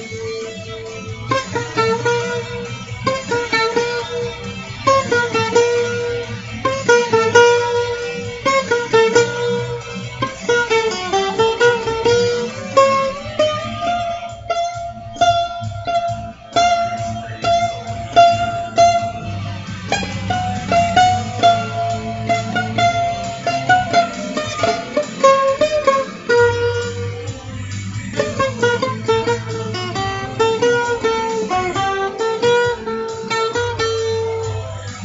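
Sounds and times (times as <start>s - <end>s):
plucked guitar melody: 0.0s - 35.0s.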